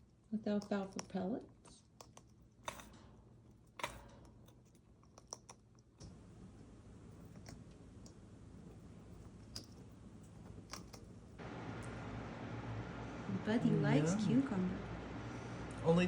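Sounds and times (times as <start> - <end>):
beak cracking seeds: 3.8 - 6.0, 10.4 - 11.2.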